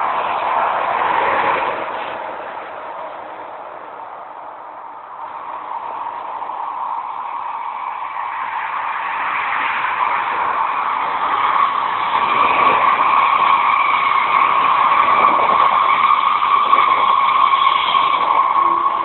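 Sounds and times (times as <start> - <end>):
train running noise: 0.0 - 19.0
train squealing whine: 4.4 - 19.0.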